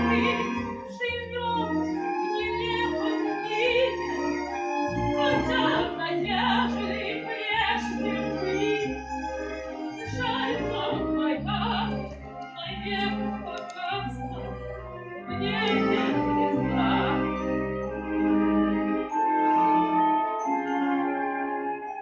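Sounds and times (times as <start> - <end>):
woman singing operatically: 0.0 - 1.8, 2.4 - 4.0, 5.2 - 8.9, 10.0 - 14.5, 15.3 - 17.3.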